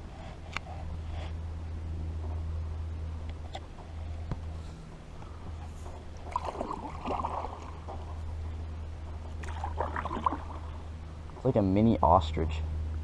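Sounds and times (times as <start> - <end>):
steady low hum: 0.0 - 13.0
water gurgling around a boat: 5.6 - 11.4.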